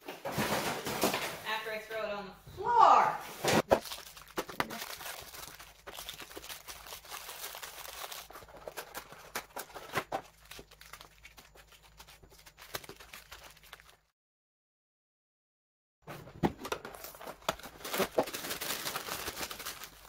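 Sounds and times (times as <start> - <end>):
plastic packaging crinkling: 3.6 - 14.1, 16.6 - 20.0.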